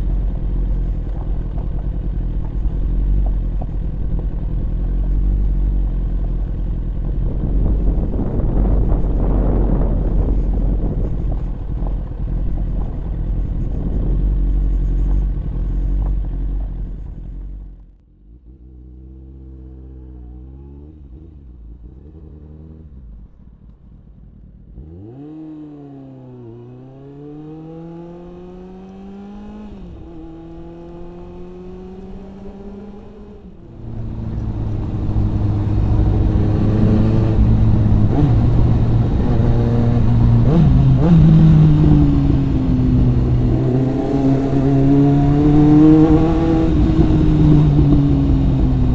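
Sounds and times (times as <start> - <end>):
wind noise on microphone: 0.0 - 17.8, 29.2 - 48.9
motorcycle engine revving: 0.0 - 48.9.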